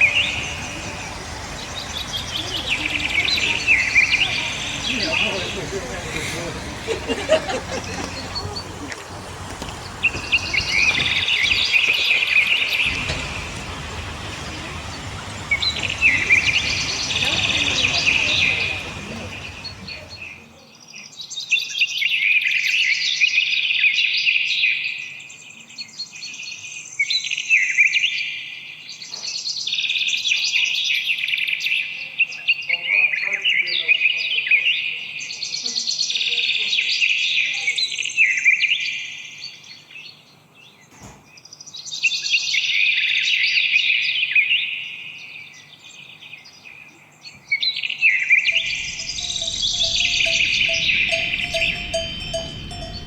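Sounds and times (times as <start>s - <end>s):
songbird chirping and trilling: 0.0s - 20.4s, 48.5s - 53.0s.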